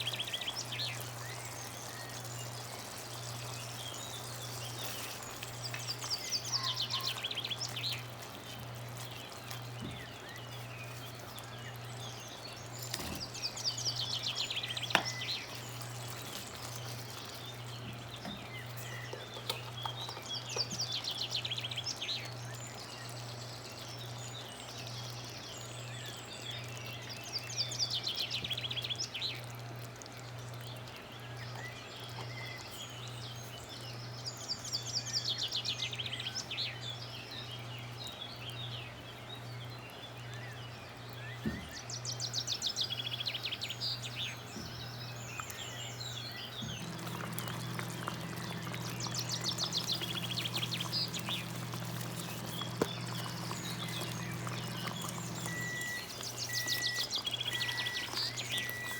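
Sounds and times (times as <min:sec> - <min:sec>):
birds chirping: 0:00.0 - 0:29.4, 0:30.6 - 0:58.9
steady low hum: 0:46.5 - 0:58.9
second hum: 0:46.6 - 0:58.9.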